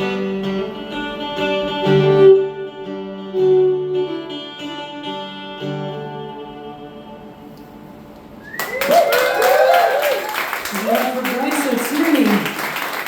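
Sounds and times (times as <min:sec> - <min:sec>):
violin: 0:00.0 - 0:07.4.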